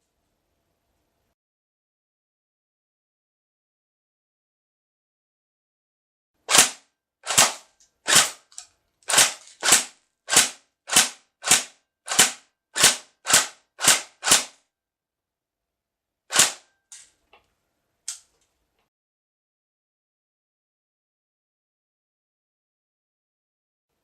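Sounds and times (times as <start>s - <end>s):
airsoft gun shots: 6.5s - 8.5s, 9.1s - 14.6s, 16.3s - 16.7s.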